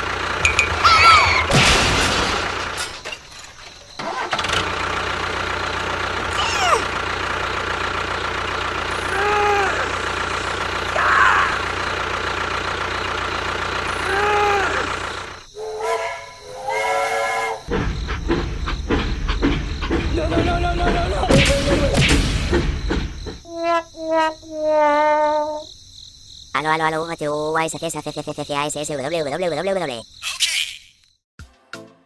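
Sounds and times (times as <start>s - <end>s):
person speaking: 6.3s - 6.9s, 26.6s - 30.1s.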